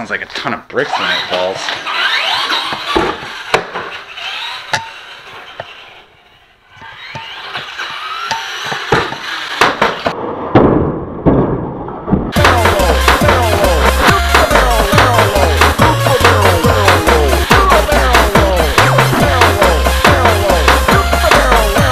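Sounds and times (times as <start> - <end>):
toy truck electric motor whining: 0.9 - 10.1
music: 12.4 - 21.9.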